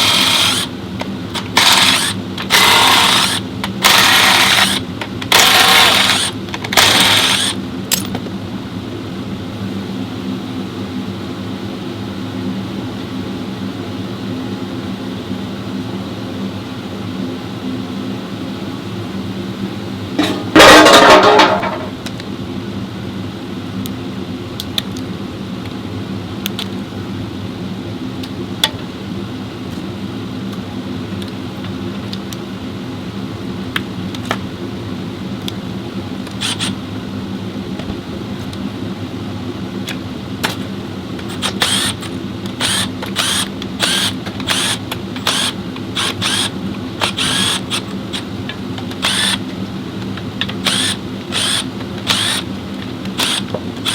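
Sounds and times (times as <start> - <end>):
steady mechanical hum: 0.0 - 53.9
sharp tool clatters: 20.2 - 22.0.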